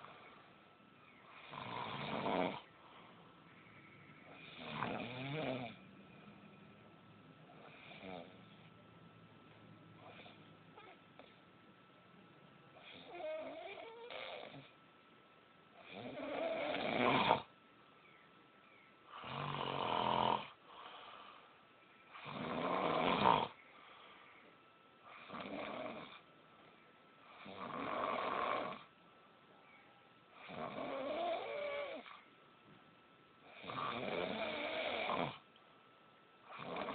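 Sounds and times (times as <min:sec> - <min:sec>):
quiet breathing: 0:00.0 - 0:14.9, 0:15.7 - 0:32.4
heavy rasping snoring: 0:01.3 - 0:02.7, 0:04.3 - 0:05.8, 0:07.6 - 0:08.5, 0:12.8 - 0:14.7, 0:15.8 - 0:17.5, 0:19.2 - 0:21.4, 0:22.2 - 0:23.6, 0:25.1 - 0:26.2, 0:27.3 - 0:28.9, 0:30.4 - 0:32.2, 0:33.5 - 0:35.4, 0:36.5 - 0:36.9.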